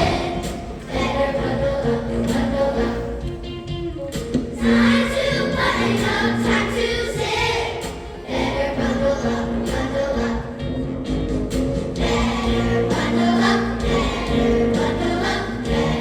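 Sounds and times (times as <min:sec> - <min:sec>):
choir singing: 0:00.0 - 0:03.5, 0:04.6 - 0:10.8, 0:11.9 - 0:16.0.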